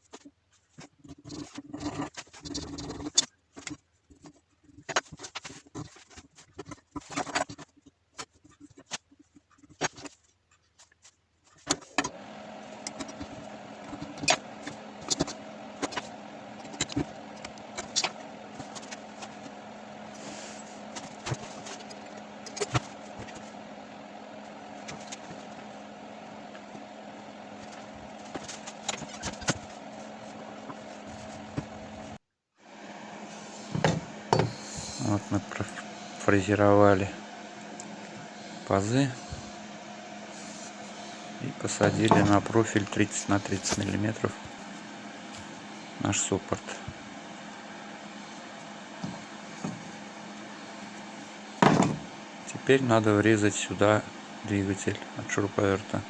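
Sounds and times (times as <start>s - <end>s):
electric milling machine running: 12.1s - 53.0s.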